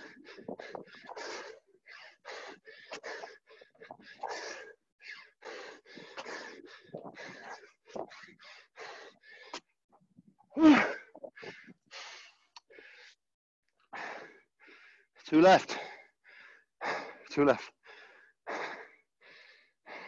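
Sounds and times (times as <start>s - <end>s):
heavy rapid panting: 0.0s - 9.6s, 17.9s - 20.0s.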